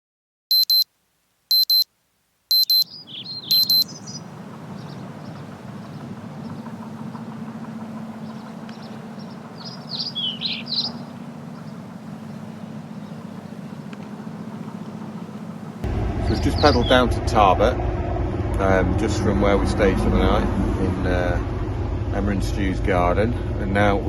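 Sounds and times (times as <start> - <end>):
electronic alarm double beeps: 0.5 - 0.9, 1.5 - 1.9, 2.5 - 3.9
birds chirping: 2.5 - 17.1
steady low hum: 3.5 - 24.0.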